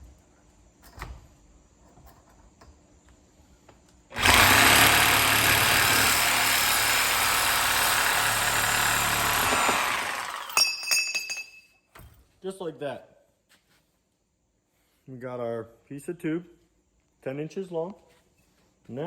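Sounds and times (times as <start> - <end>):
reciprocating saw cutting steel: 4.1 - 10.6.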